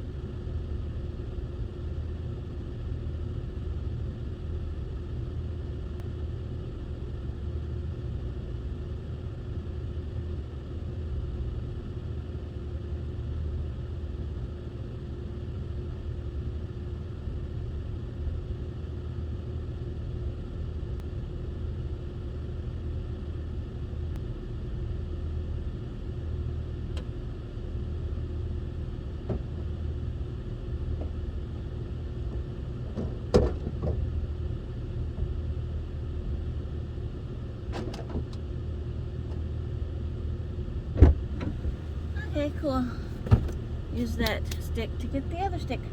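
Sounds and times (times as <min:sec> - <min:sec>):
vehicle engine rumbling: 0:41.1 - 0:45.9.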